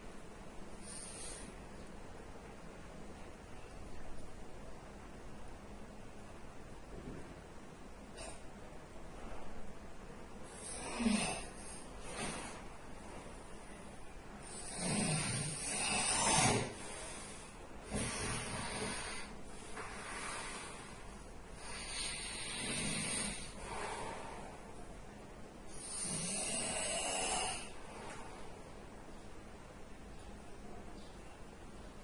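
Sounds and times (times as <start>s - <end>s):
person snoring: 10.5s - 12.6s, 14.4s - 19.4s, 21.6s - 24.5s, 25.7s - 27.8s.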